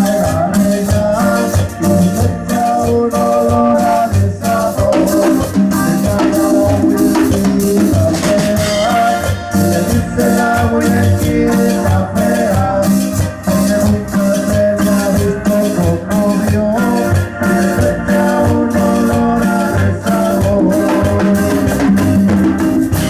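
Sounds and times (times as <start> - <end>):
electric guitar lead melody: 0.0 - 23.0
live cumbia band music: 0.0 - 23.0.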